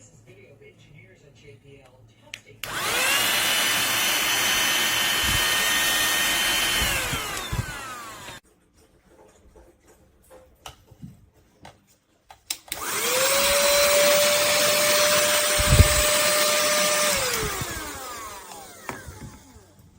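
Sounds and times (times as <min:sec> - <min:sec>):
vacuum cleaner motor whining: 0:02.6 - 0:08.4, 0:12.7 - 0:19.9.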